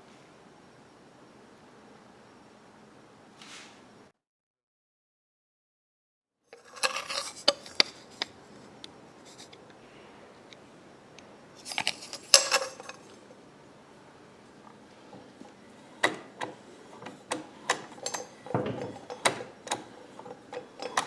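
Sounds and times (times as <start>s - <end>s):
sewing machine clinks and knocks: 16.0s - 21.0s.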